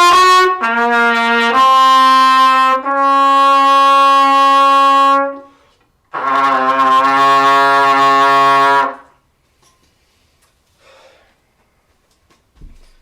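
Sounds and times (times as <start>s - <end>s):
trumpet playing long notes: 0.0s - 9.2s.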